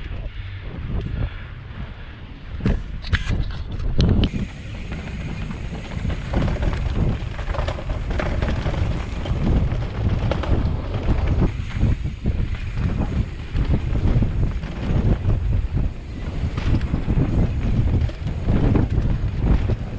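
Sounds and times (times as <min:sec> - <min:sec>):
wind buffeting microphone: 0:00.0 - 0:19.9
bike knocks and rattles: 0:04.1 - 0:19.9.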